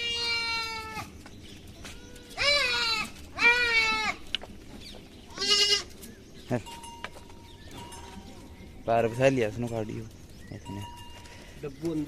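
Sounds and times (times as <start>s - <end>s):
goats bleating: 0.0s - 1.1s, 1.9s - 4.3s, 5.3s - 6.0s.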